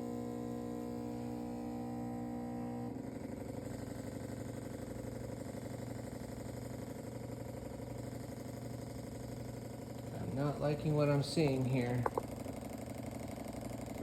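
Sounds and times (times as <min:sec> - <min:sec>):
espresso machine pump buzzing: 0:00.0 - 0:14.0.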